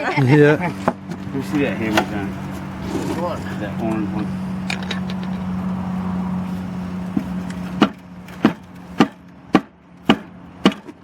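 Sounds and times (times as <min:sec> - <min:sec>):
hammer pounding a tire: 0:07.2 - 0:11.0.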